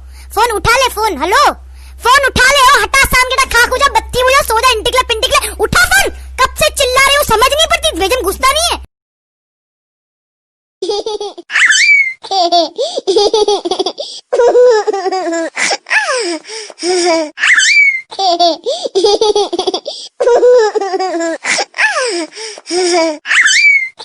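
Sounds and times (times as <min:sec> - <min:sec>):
laughter ringtone: 0:11.5 - 0:12.2, 0:17.4 - 0:18.1.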